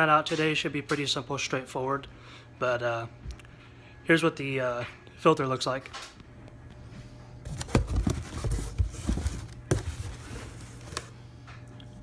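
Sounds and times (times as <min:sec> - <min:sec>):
low steady hum: 0:01.2 - 0:12.0
packaging handling rustles and clicks: 0:07.4 - 0:11.2.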